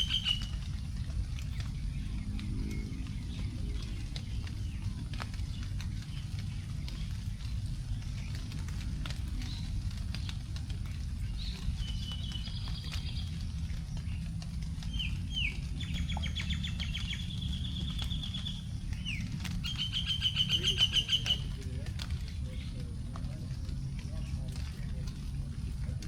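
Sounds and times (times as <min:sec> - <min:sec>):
bird trills: 0:00.0 - 0:00.6
bird whistles: 0:00.0 - 0:00.6
low background rumble: 0:00.0 - 0:26.0
raindrops falling on leaves: 0:00.0 - 0:26.0.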